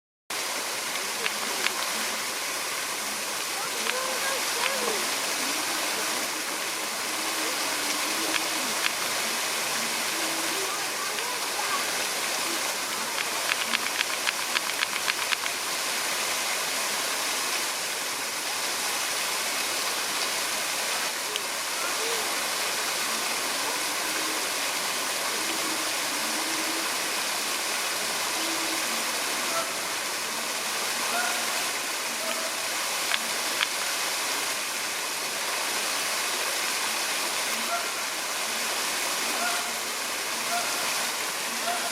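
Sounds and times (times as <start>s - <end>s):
rushing falling water: 0.3s - 41.9s
sharp clicks: 12.9s - 15.6s.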